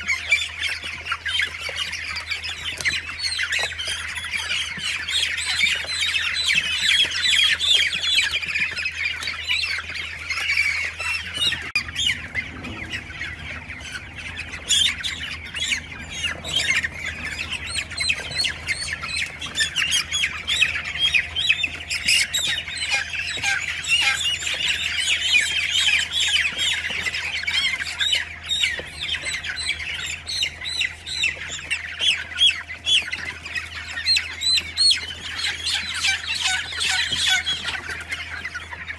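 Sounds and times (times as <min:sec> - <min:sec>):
chicks peeping: 0:00.0 - 0:38.9
low steady hum: 0:07.8 - 0:38.9.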